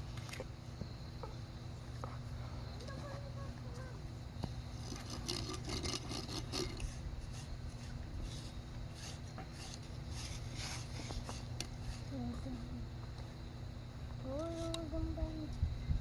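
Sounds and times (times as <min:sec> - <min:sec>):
steady low hum: 0:00.0 - 0:16.0
hand tools scraping soil on bricks: 0:04.7 - 0:12.1.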